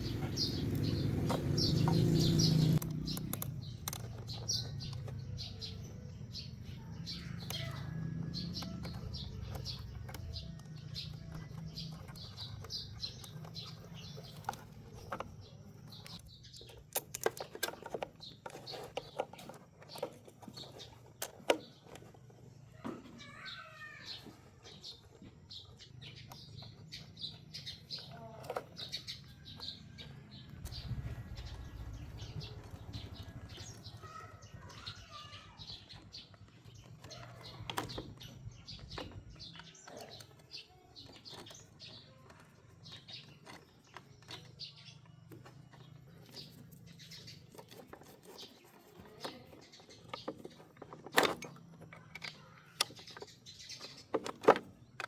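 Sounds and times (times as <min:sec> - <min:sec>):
deep rumble: 0:30.4 - 0:34.6.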